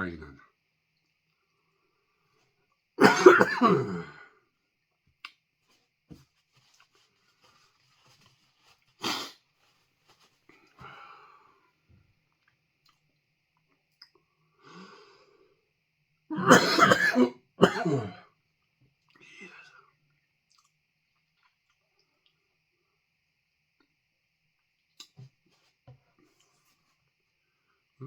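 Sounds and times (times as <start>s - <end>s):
man coughing: 3.0s - 4.2s, 16.3s - 18.2s.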